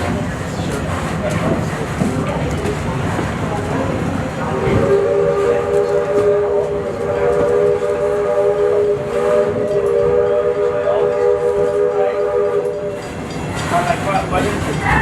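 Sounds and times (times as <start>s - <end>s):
rumble of moving train: 0.0s - 15.0s
steam locomotive chime whistle: 4.8s - 13.3s.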